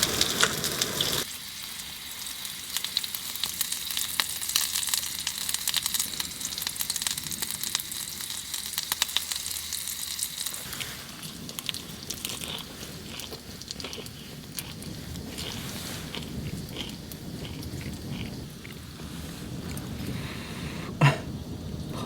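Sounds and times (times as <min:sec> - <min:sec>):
food sizzling in a pan: 0:00.0 - 0:17.4.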